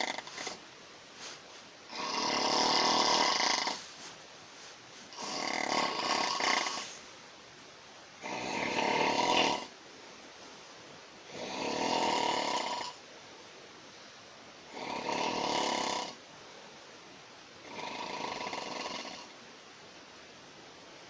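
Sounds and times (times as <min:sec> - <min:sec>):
loud snoring: 0:00.0 - 0:00.6, 0:01.9 - 0:03.9, 0:05.1 - 0:07.0, 0:08.2 - 0:09.7, 0:11.3 - 0:13.0, 0:14.7 - 0:16.2, 0:17.6 - 0:19.3
quiet breathing: 0:00.0 - 0:07.2.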